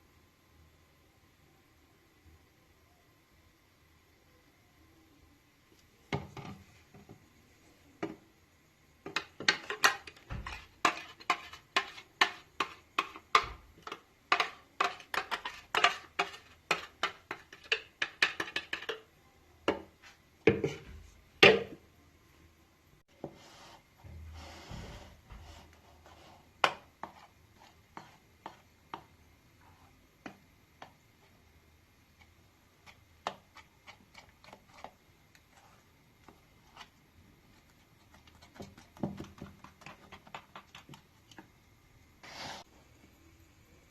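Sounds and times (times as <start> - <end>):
utensil scraping: 9.1 - 13.2, 13.8 - 18.9.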